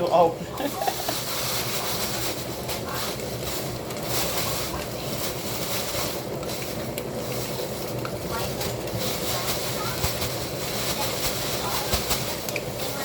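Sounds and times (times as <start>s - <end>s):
fish frying in hot oil: 0.0s - 13.0s.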